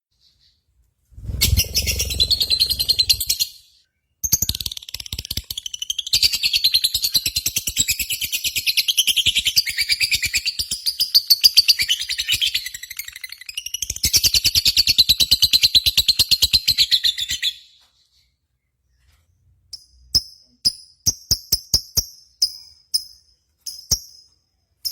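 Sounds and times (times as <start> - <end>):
lovebird chattering: 1.2 - 3.5.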